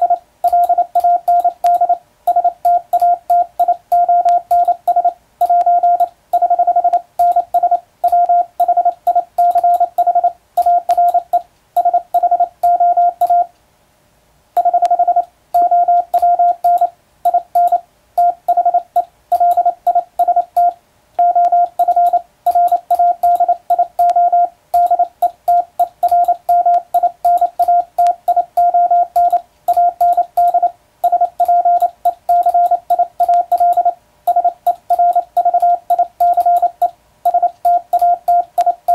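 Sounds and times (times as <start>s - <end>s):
morse code beeps: 0.0s - 13.5s, 14.6s - 38.9s
faint keying clicks: 14.8s - 24.2s, 24.8s - 38.9s.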